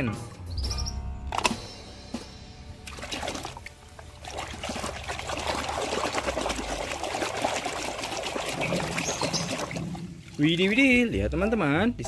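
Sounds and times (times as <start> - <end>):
water pouring and trickling: 2.8 - 11.3.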